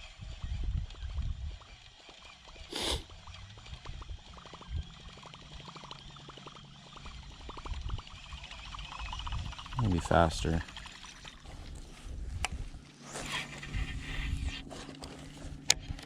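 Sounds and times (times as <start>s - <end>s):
fishing reel ticking: 0.0s - 11.5s.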